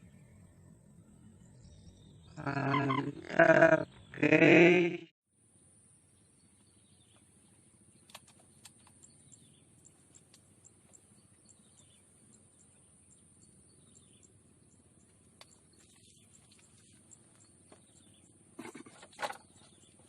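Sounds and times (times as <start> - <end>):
faint chirps: 0.0 - 5.0.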